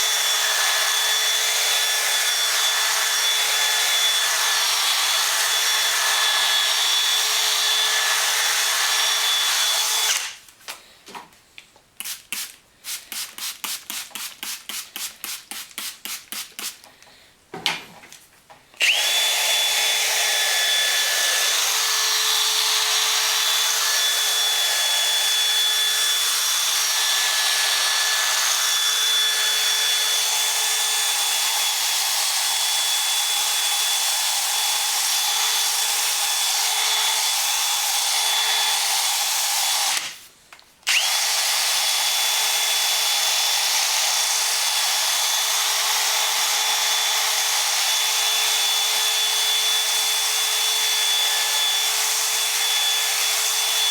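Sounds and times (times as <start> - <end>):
drill motor whine: 0.0 - 10.4, 18.8 - 40.1, 40.9 - 53.9.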